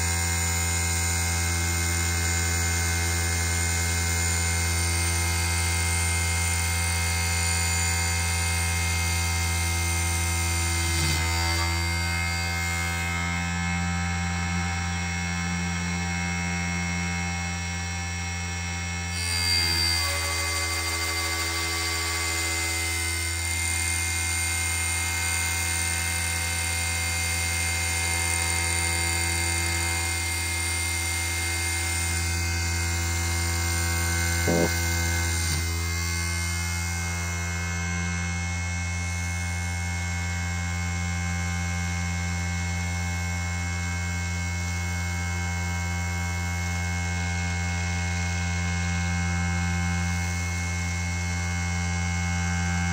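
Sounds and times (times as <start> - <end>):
lathe motors humming and whining: 0.0 - 52.9.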